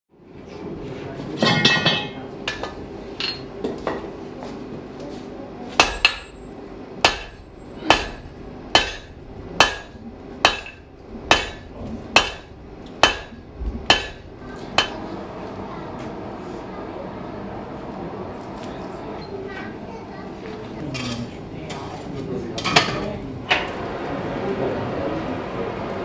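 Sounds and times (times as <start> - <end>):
hammer striking iron on anvil: 1.4 - 4.0, 5.8 - 15.0.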